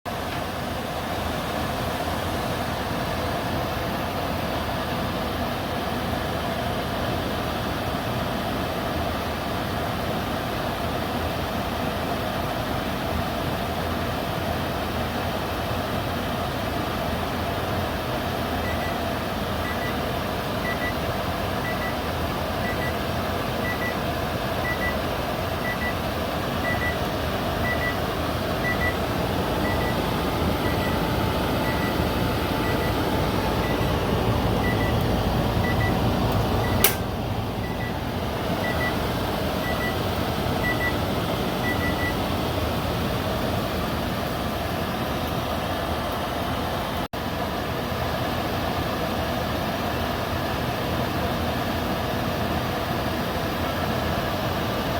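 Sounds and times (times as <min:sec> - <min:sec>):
steady whirring hum: 0:00.1 - 0:54.9
microwave double beeps: 0:18.6 - 0:42.4
sharp click: 0:36.8 - 0:37.1.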